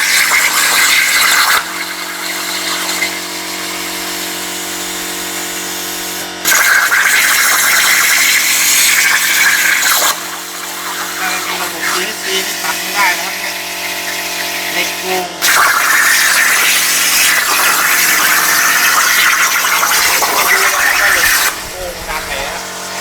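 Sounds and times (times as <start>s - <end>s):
plasma arc hissing: 0.1s - 23.0s
steady electrical hum: 8.4s - 23.0s.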